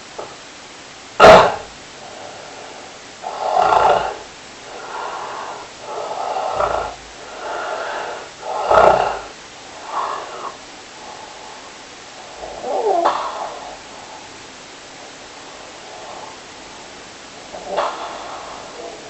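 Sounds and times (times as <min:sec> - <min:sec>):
person snoring: 0:03.2 - 0:11.6, 0:12.4 - 0:14.2, 0:17.5 - 0:19.0.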